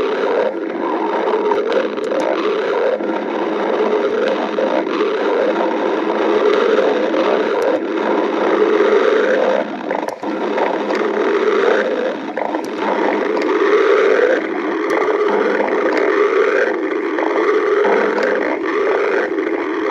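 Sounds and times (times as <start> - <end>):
stomach growling: 0.0 - 19.9.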